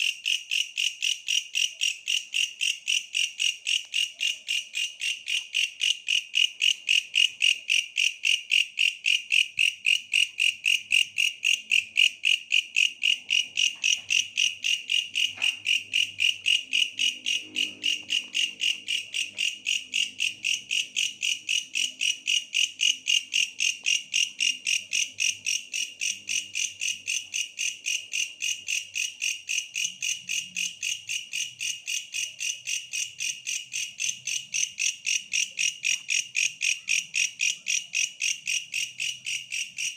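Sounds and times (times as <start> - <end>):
grasshopper high-pitched pulses: 9.7 - 39.9.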